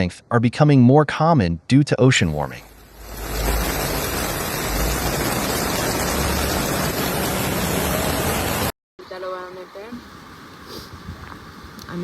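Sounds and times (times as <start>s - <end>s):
hurricane storm rushing hiss: 2.4s - 8.7s.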